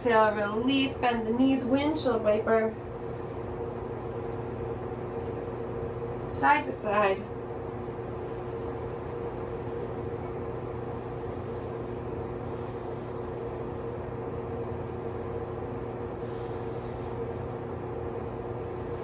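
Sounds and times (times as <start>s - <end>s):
steady mechanical hum: 0.0s - 19.0s.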